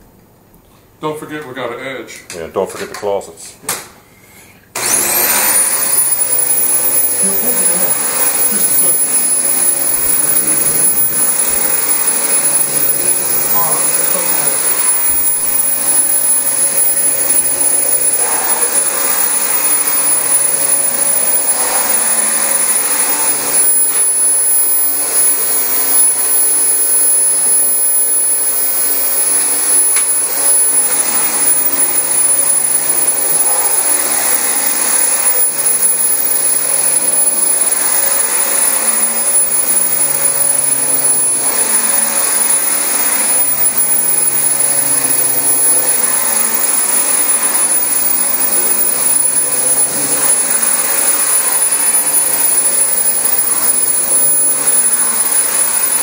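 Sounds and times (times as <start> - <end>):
vacuum cleaner on carpet: 4.8 - 56.0.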